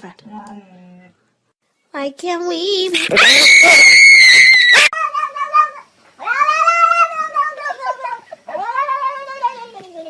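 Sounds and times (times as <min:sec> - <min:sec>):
shrill cry: 0:02.9 - 0:09.8
cat yowling: 0:03.1 - 0:09.7.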